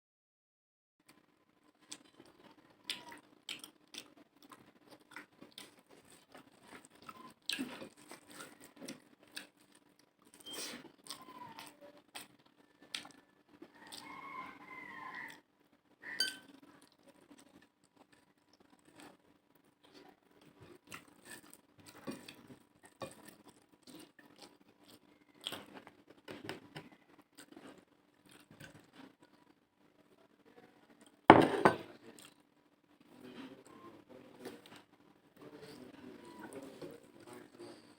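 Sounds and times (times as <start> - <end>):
chewing: 1.1 - 15.4, 16.6 - 29.6.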